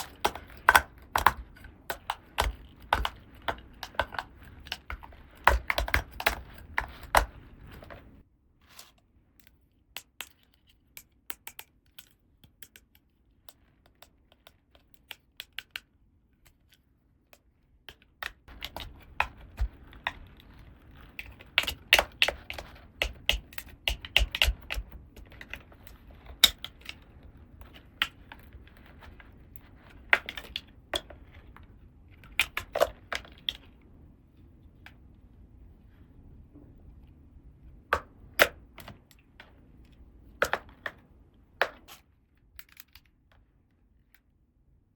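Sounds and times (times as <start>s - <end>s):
plastic toy pieces clicking: 17.9s - 31.2s.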